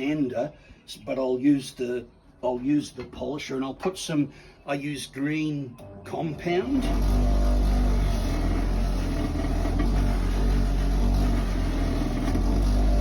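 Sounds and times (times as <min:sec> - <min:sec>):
bench grinder motor hum: 0:06.6 - 0:13.0.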